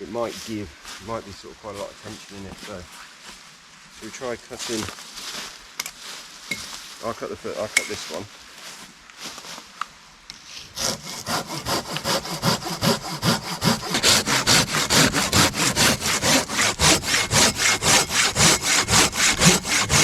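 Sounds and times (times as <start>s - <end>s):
hand saw cutting log: 10.8s - 20.0s.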